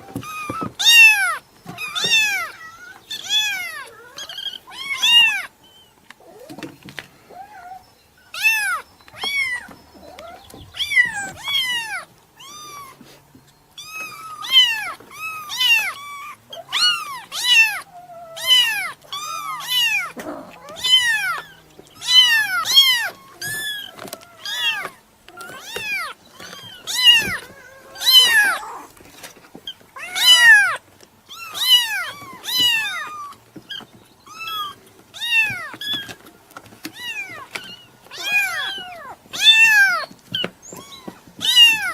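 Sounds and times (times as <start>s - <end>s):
kitten meowing: 0.1s - 5.5s, 13.8s - 28.9s, 30.0s - 33.4s, 36.9s - 41.9s.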